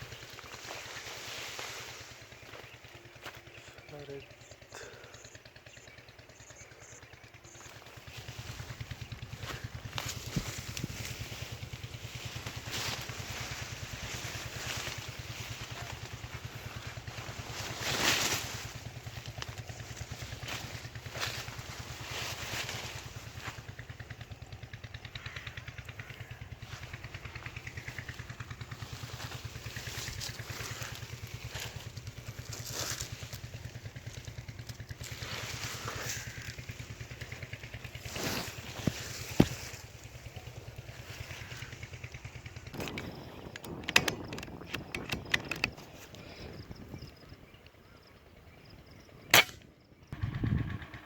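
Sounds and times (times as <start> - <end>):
small engine running: 0.0 - 51.0
quick run of clicks: 42.5 - 46.7
sharp crack: 49.3 - 49.7.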